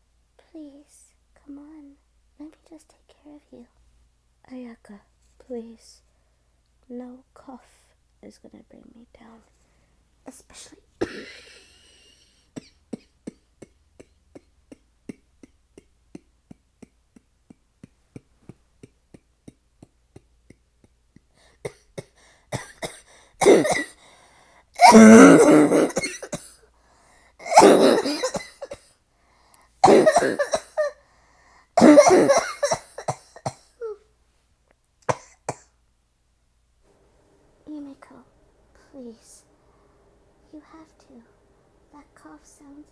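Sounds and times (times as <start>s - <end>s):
woman coughing: 10.6s - 13.4s, 21.6s - 24.0s, 24.8s - 26.6s, 27.4s - 28.9s, 29.8s - 31.0s, 31.8s - 34.0s, 35.1s - 35.7s.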